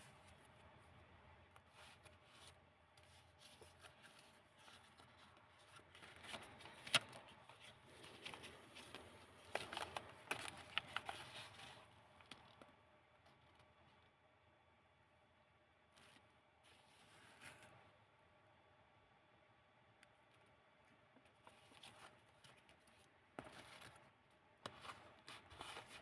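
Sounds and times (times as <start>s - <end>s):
paper pages rustling: 1.6s - 12.7s, 21.3s - 26.0s.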